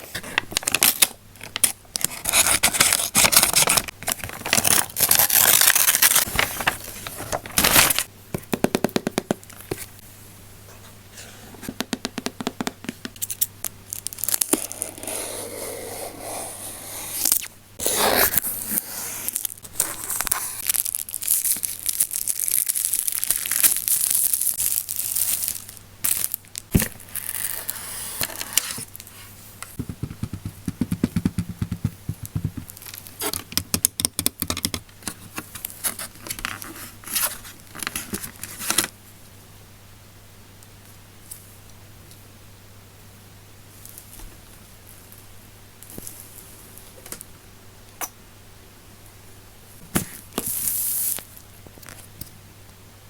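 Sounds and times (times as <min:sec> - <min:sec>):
packaging crinkling and rustling: 0:00.2 - 0:08.1, 0:13.9 - 0:14.9, 0:19.3 - 0:29.1
packaging tearing: 0:00.4 - 0:08.1.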